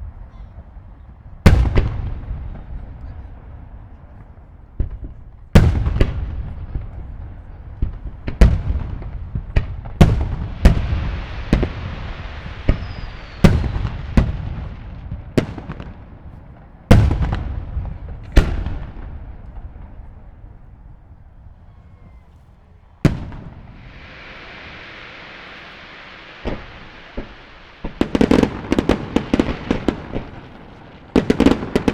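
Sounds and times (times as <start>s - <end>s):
firework shells booming: 1.4s - 4.2s, 4.8s - 31.9s
steady hiss: 8.8s - 16.6s, 22.5s - 31.7s.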